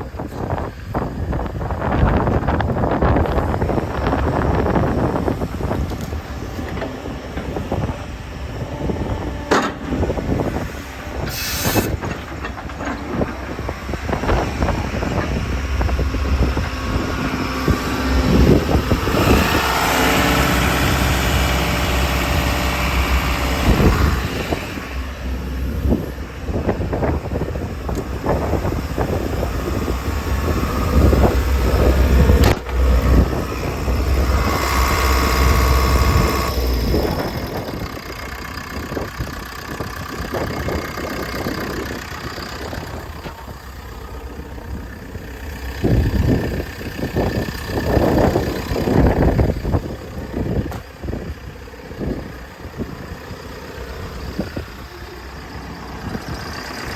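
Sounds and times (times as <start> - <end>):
excavator diesel engine: 0.0 - 56.9
knocks and clanks: 9.2 - 10.6, 11.2 - 17.2.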